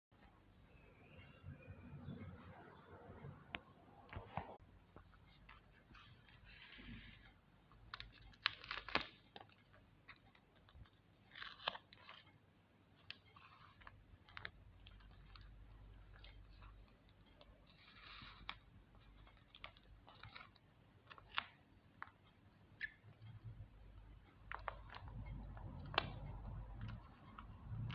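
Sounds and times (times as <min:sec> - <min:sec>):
paper crinkling: 0:04.1 - 0:22.4.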